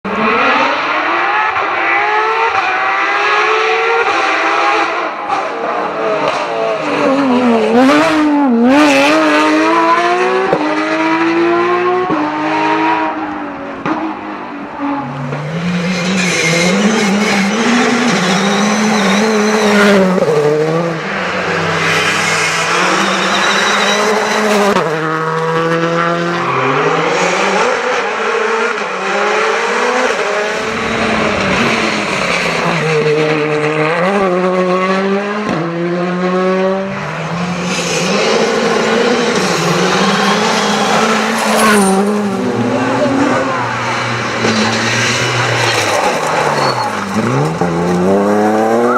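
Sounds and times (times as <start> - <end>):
rally car engines revving: 0.0 - 48.9
tyres scrabbling and squealing: 15.9 - 20.4, 22.0 - 24.8, 44.5 - 47.6.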